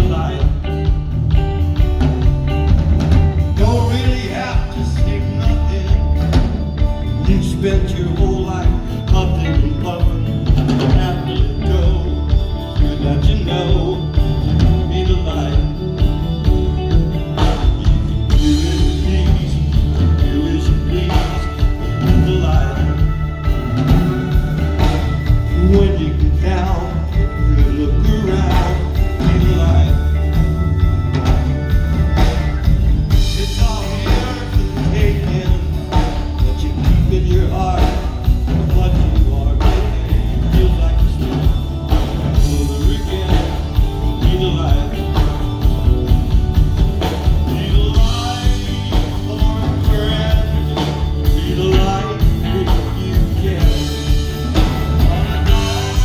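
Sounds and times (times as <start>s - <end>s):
person singing: 0.0s - 2.4s, 3.1s - 56.0s
rock band playing: 0.0s - 56.0s.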